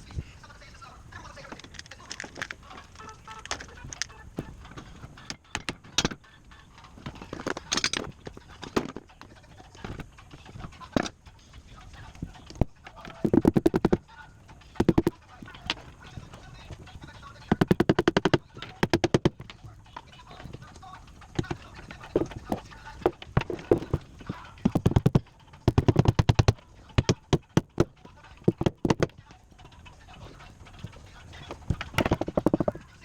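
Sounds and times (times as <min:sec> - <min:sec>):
rapid rattling tool strokes: 0:01.4 - 0:33.0
sharp knocks on wood: 0:12.6 - 0:14.0, 0:14.8 - 0:15.8, 0:17.5 - 0:19.7, 0:21.4 - 0:29.2, 0:31.7 - 0:32.8.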